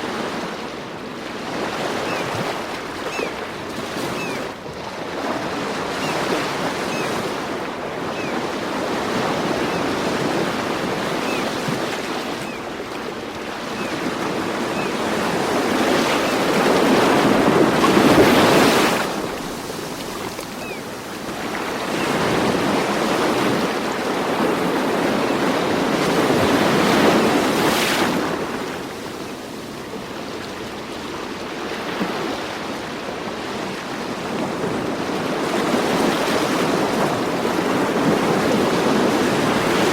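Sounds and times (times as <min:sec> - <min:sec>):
ocean waves washing in: 0:00.0 - 0:30.2.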